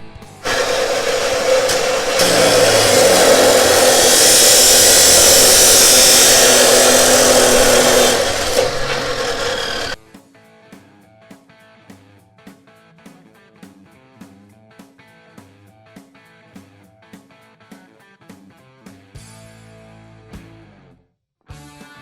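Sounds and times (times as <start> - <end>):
arc welder crackling: 0.4 - 10.0.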